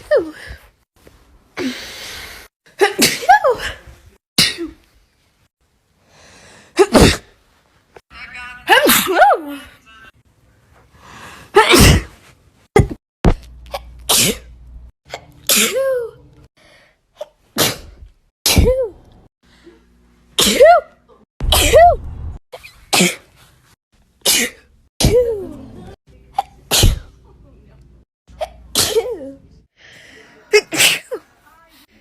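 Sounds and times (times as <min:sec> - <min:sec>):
woman sneezing: 0:08.7 - 0:09.6, 0:11.5 - 0:12.2, 0:20.4 - 0:20.9, 0:28.4 - 0:29.3, 0:30.5 - 0:31.2.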